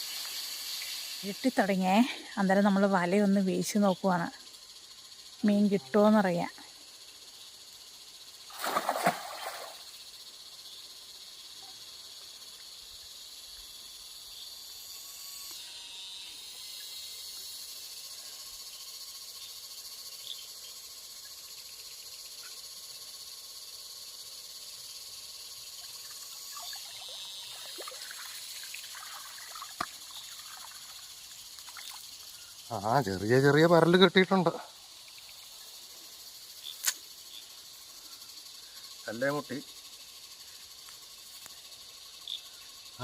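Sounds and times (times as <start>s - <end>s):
thin steady tone: 0.0s - 8.5s
insect chorus trilling: 0.0s - 43.0s.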